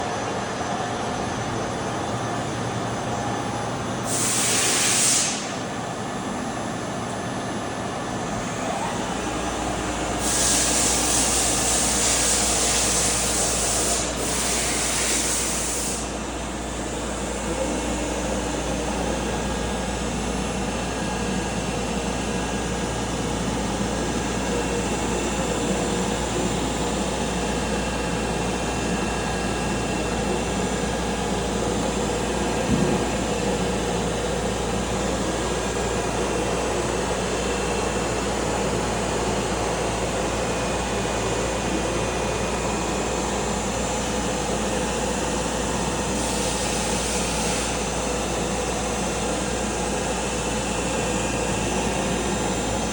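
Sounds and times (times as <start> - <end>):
brief knock: 32.6 - 33.2.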